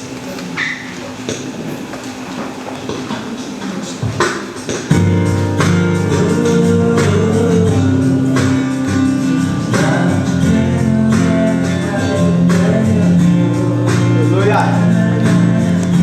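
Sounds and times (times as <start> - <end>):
guitar strumming: 4.2 - 16.0
bass line: 4.9 - 16.0.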